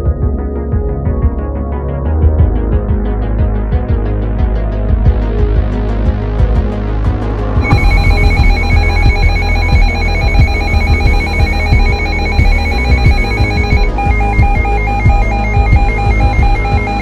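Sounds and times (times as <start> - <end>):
electronic music with low beat: 0.0 - 17.0
trilling electronic alert tone: 7.6 - 17.0.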